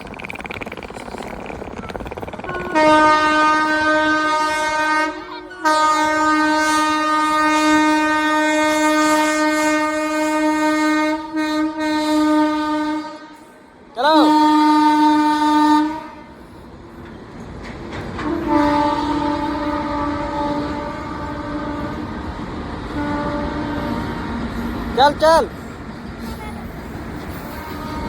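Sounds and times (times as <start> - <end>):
rumbling train noise: 0.0 - 28.0
train horn blasts: 2.5 - 16.4, 18.2 - 24.6, 27.5 - 28.0.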